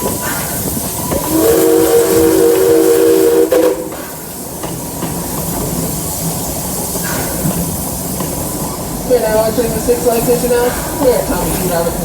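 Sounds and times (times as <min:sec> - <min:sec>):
steam hissing: 0:00.0 - 0:12.0
train running: 0:00.0 - 0:12.0
steam locomotive whistle: 0:01.1 - 0:04.2.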